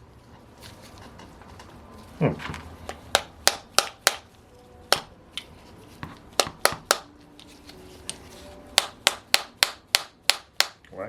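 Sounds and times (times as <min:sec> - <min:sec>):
tool tapping on metal: 0:06.0 - 0:07.1, 0:08.8 - 0:10.8.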